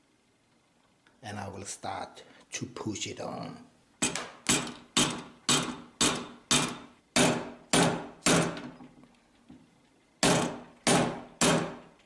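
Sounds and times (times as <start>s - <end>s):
hammer tapping on metal: 4.0s - 8.6s.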